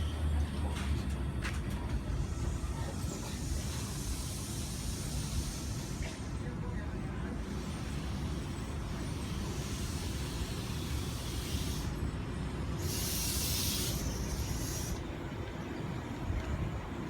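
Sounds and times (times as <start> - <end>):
train rumble: 0.0 - 17.0
high hiss: 12.8 - 15.0.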